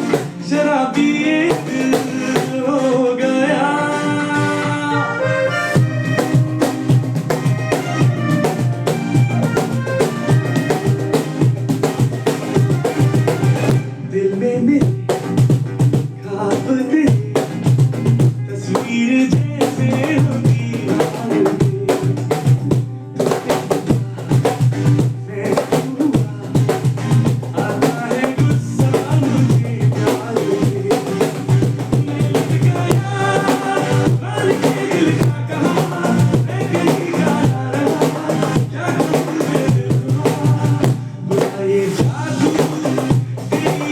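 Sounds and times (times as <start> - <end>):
cajon played by hand: 0.0 - 3.1, 5.5 - 13.9, 14.8 - 43.9
song melody: 0.0 - 16.4, 27.9 - 43.9.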